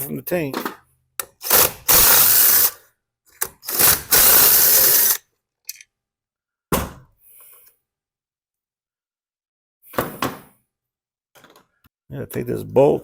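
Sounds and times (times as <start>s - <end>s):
power drill driver running: 1.4s - 2.8s, 3.6s - 5.2s.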